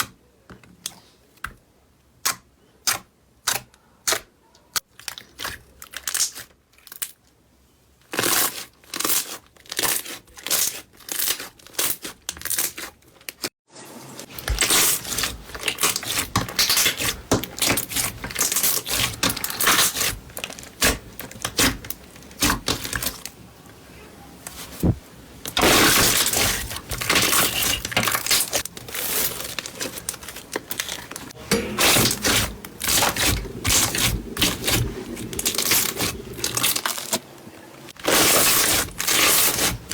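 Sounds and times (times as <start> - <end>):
slime squishing and crackling: 4.9 - 7.2, 8.1 - 13.5, 14.5 - 23.4, 24.6 - 39.9.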